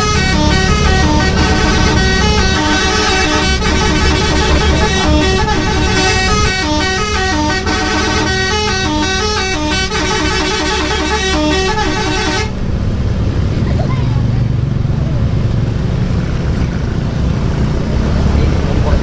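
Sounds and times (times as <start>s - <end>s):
multi-tone bus air horn tune: 0.0s - 12.6s
bus engine rumble: 0.0s - 19.0s.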